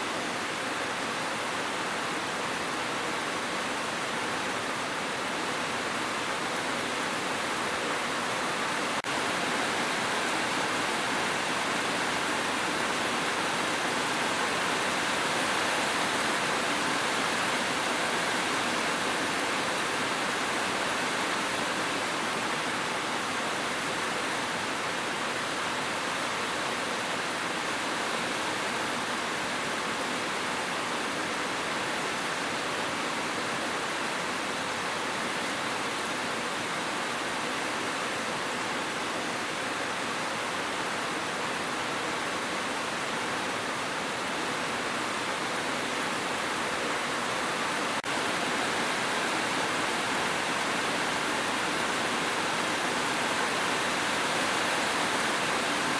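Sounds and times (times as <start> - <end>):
heavy rain rushing: 0.0 - 27.8, 38.8 - 55.9.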